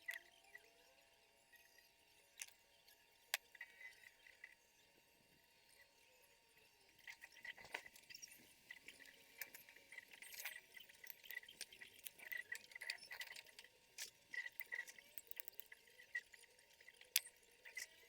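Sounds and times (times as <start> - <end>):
small clicks handling wires: 2.4 - 2.6, 8.7 - 15.8.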